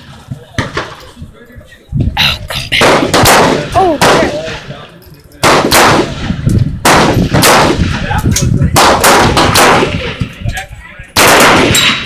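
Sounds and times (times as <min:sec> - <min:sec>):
gunshots with echo: 0:05.4 - 0:08.0, 0:11.2 - 0:12.0.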